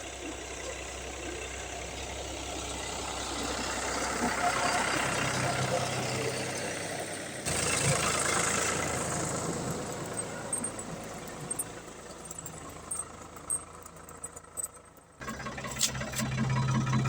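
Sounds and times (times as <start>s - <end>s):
tractor engine running: 0.0s - 17.0s.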